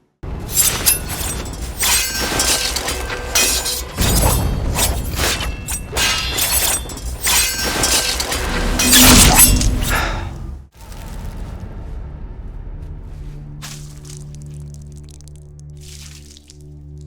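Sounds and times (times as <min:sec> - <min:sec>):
swords clashing: 0:00.5 - 0:10.4.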